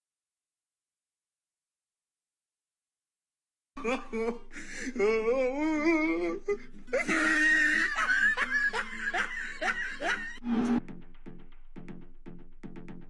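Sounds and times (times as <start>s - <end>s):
person laughing hard: 3.8s - 10.4s
electronic music with steady beat: 10.4s - 13.0s.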